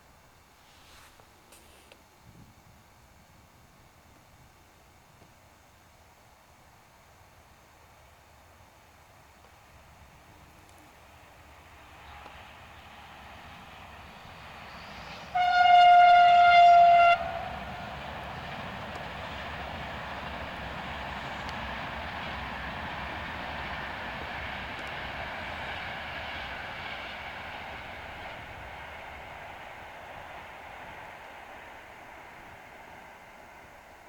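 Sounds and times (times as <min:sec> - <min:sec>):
passing train rumble: 0:07.8 - 0:34.0
train horn blast: 0:14.7 - 0:17.9.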